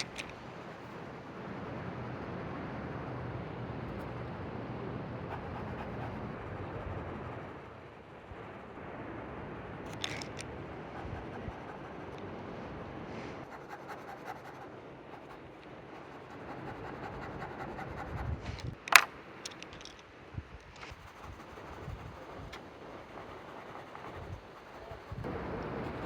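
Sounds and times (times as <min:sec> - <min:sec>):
faint scratching and clicks: 0:00.0 - 0:01.2, 0:05.2 - 0:08.7, 0:09.8 - 0:12.3, 0:13.3 - 0:26.0
wind-like outdoor noise: 0:00.0 - 0:26.0.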